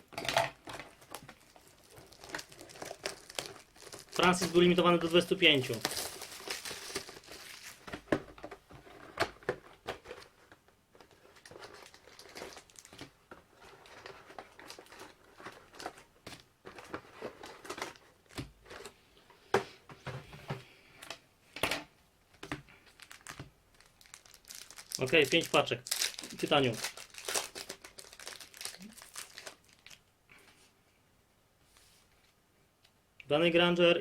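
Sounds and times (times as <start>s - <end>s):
plastic wrap crinkling: 0.0s - 9.2s, 9.8s - 18.9s, 22.7s - 30.0s.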